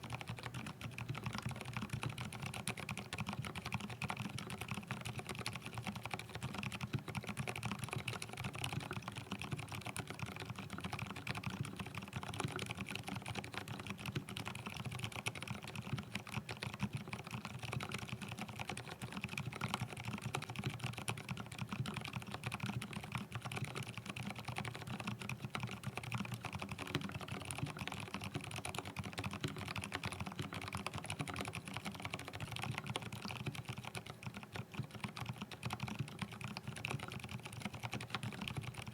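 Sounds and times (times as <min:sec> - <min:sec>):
fast typing on mechanical keyboard: 0:00.0 - 0:38.9.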